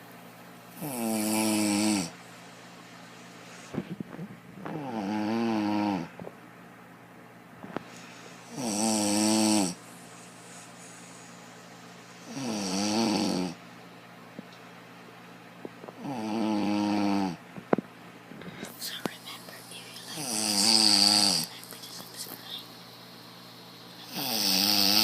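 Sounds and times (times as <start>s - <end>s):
woman snoring loudly: 0.8s - 2.2s, 4.7s - 6.1s, 8.5s - 9.8s, 12.3s - 13.6s, 16.0s - 17.4s, 20.1s - 21.6s, 24.0s - 25.0s.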